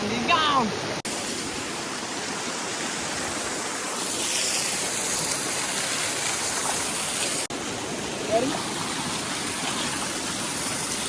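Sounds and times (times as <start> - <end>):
rushing stream water: 0.0 - 11.0.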